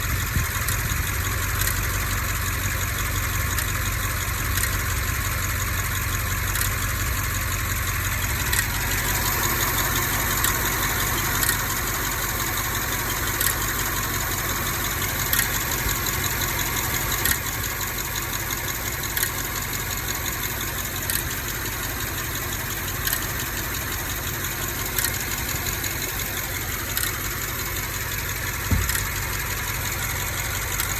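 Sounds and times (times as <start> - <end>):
car engine idling: 0.0 - 30.9
fast light engine ticking: 0.0 - 30.9
engine misfire stumble: 20.4 - 30.9.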